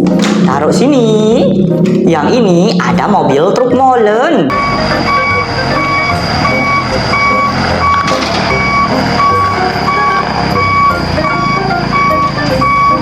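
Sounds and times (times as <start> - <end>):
steady low rumble: 4.5 - 13.0
truck reversing alarm beeping: 4.5 - 13.0.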